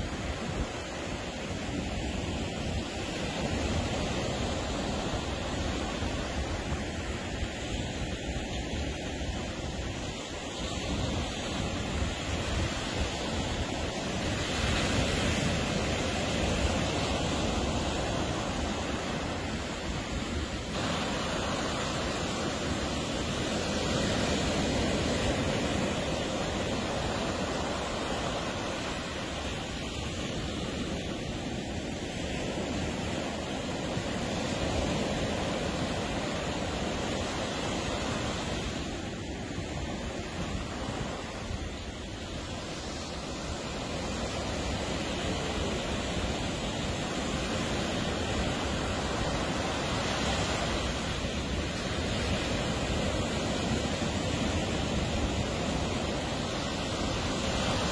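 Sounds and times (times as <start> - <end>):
ocean surf washing: 0.0 - 57.9
wind on microphone: 0.0 - 57.9.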